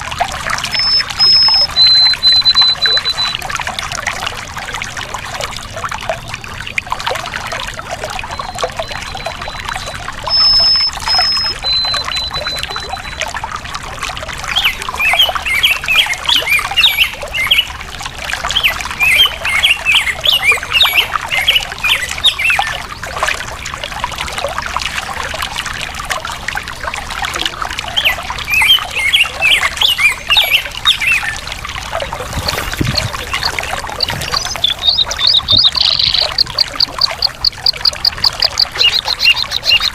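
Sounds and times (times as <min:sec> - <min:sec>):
stream flowing over rocks: 0:00.0 - 0:39.9
long whistled bird notes: 0:00.6 - 0:03.4, 0:08.3 - 0:13.2, 0:32.9 - 0:39.9
rapid bird chirping: 0:00.6 - 0:03.4, 0:08.3 - 0:13.2, 0:14.5 - 0:17.7, 0:18.6 - 0:22.8, 0:28.0 - 0:31.5, 0:32.2 - 0:39.9
birds singing: 0:00.7 - 0:03.4, 0:08.3 - 0:13.2, 0:14.5 - 0:17.8, 0:18.5 - 0:23.1, 0:27.9 - 0:31.5, 0:32.1 - 0:39.9.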